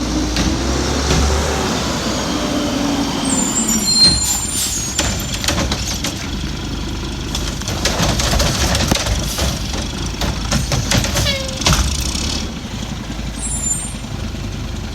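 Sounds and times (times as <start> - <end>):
diesel engine running: 0.0 - 14.9
high squeal: 1.6 - 5.6, 11.1 - 12.2, 13.4 - 14.1.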